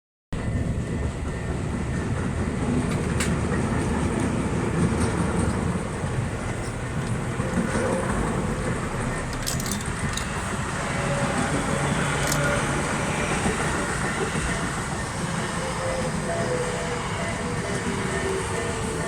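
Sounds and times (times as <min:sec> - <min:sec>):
train wheels rumbling on rails: 0:00.4 - 0:19.0
clicks of train wheels: 0:01.3 - 0:19.0.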